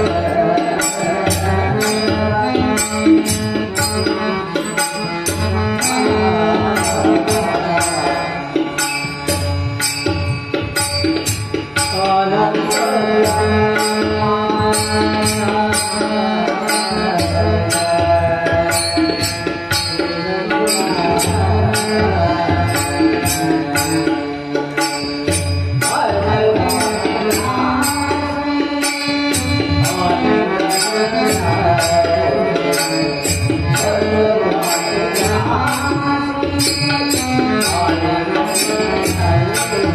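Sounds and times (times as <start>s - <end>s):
person singing devotional song: 0.0s - 39.9s.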